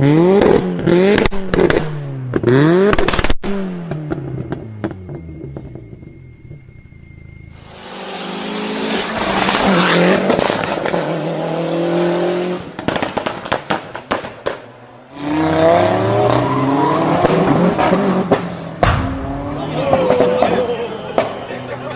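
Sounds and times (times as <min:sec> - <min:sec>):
exhaust pops and bangs: 0:12.8 - 0:14.6, 0:18.3 - 0:21.4
car engine revving hard: 0:15.2 - 0:19.6.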